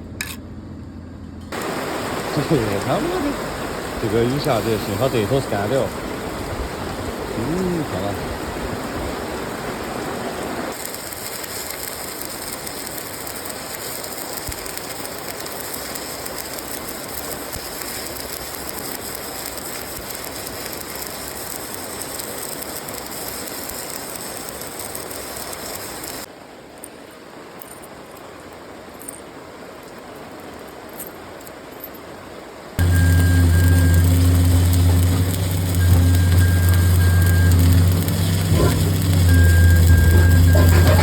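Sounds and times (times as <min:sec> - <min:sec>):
arc welding crackle: 0:10.7 - 0:26.3, 0:32.8 - 0:41.0.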